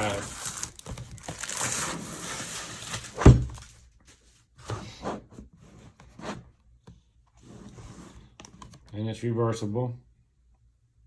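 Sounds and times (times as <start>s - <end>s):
plastic packaging crinkling: 0.0s - 3.8s
loud thud: 3.2s - 3.6s.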